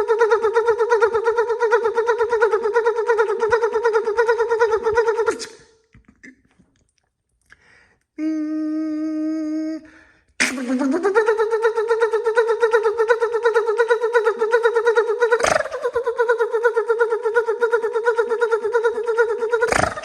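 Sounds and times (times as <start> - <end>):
voice imitating starter cranking: 10.6 - 20.0.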